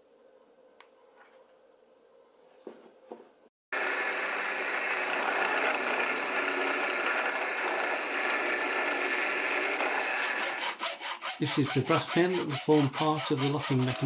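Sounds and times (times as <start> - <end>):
electric drill running: 3.8 - 10.9.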